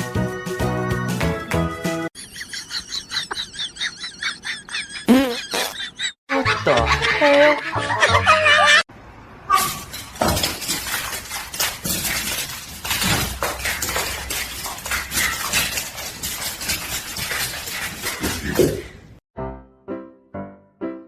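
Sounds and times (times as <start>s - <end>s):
hard objects clattering: 9.8s - 19.2s.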